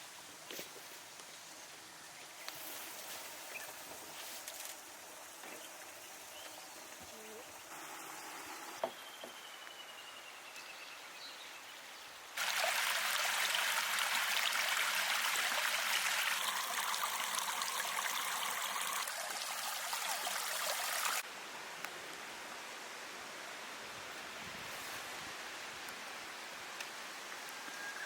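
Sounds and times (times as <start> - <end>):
water rushing: 12.4 - 21.2.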